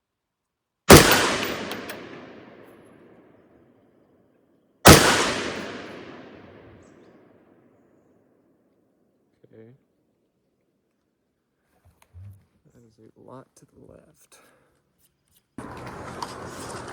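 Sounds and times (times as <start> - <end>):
rifle shots with echo: 0.9 - 3.2, 4.8 - 7.0.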